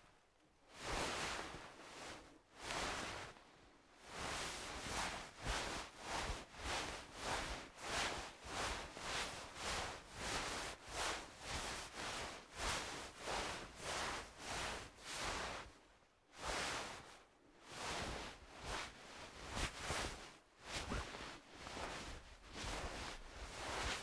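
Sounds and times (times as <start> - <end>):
fabric rustling swish: 19.4 - 24.0.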